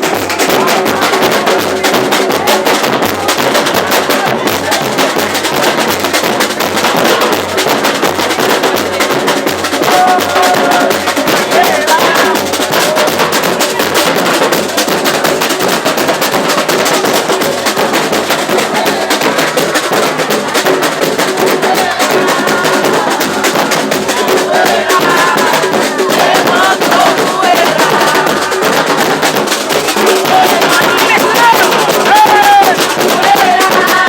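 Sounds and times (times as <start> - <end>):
percussion band drumming: 0.0 - 34.0
voices: 0.0 - 34.0.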